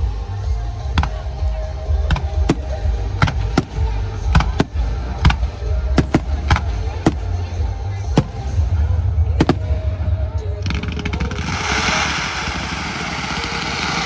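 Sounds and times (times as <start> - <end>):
music playing: 0.0 - 10.8
fireworks bangs: 2.5 - 5.0, 6.0 - 14.0
low rumble: 2.6 - 13.4.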